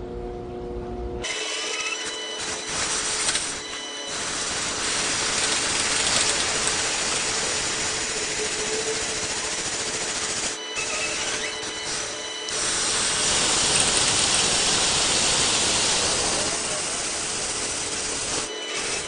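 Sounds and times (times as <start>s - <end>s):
mechanical grinding and rattling: 1.3s - 19.0s.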